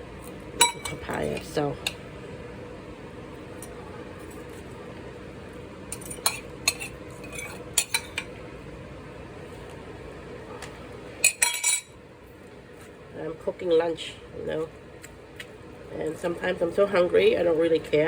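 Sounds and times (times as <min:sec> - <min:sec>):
steady low hum: 0:00.0 - 0:18.0
utensils clinking against bowl: 0:00.6 - 0:02.0, 0:05.9 - 0:08.3, 0:11.2 - 0:12.0.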